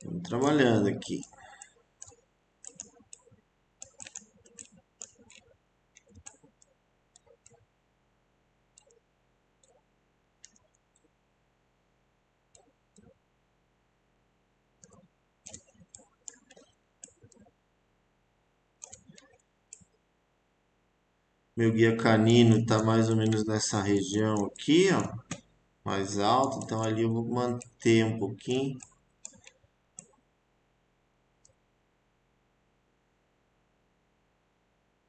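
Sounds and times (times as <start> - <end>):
computer mouse clicks: 0.0 - 7.7, 8.7 - 11.2, 12.5 - 13.2, 14.8 - 17.6, 18.8 - 20.0, 22.6 - 30.2, 31.4 - 31.6.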